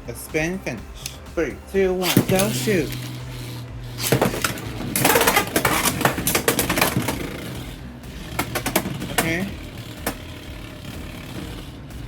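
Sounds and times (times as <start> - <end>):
spinning tops clashing: 2.0 - 7.8.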